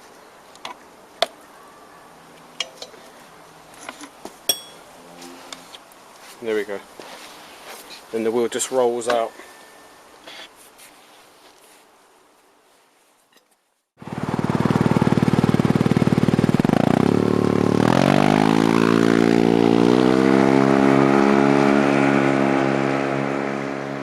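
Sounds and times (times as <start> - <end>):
engine running and revving: 14.0 - 24.0.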